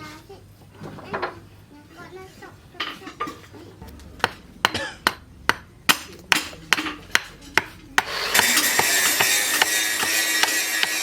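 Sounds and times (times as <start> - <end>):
hammer striking metal: 4.2 - 11.0.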